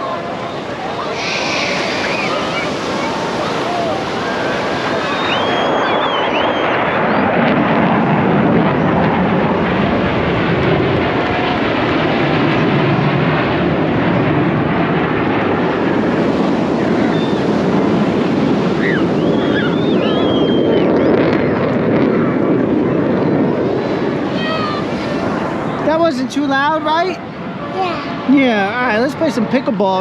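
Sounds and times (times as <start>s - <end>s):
jet noise flying over: 0.0s - 30.0s
faint high calls: 1.0s - 6.7s.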